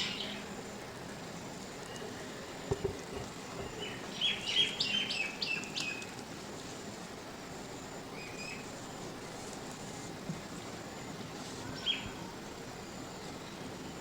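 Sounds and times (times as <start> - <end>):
small birds chirping: 3.3 - 6.1.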